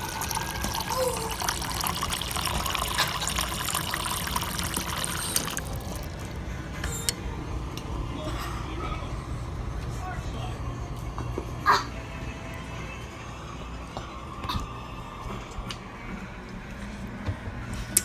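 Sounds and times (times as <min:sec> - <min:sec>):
running water filling a container: 0:00.0 - 0:06.4.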